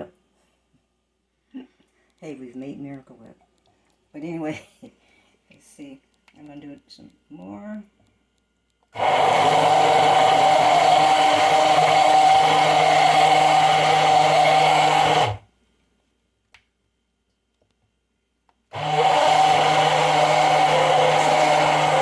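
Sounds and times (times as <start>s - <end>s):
immersion blender running: 9.0s - 15.4s, 18.7s - 22.0s.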